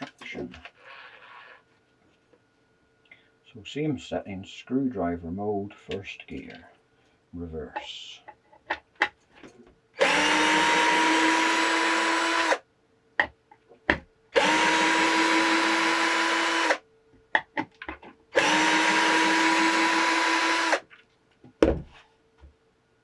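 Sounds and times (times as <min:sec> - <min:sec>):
cordless drill motor whining: 0:10.0 - 0:12.6, 0:14.4 - 0:16.8, 0:18.4 - 0:20.8.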